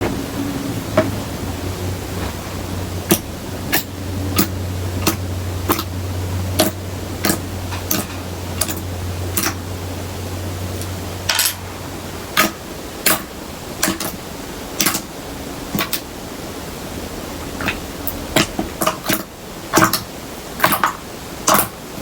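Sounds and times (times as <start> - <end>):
low hum: 0.0 - 18.4
steady hiss: 0.0 - 22.0
air bubbles popping: 2.1 - 9.6.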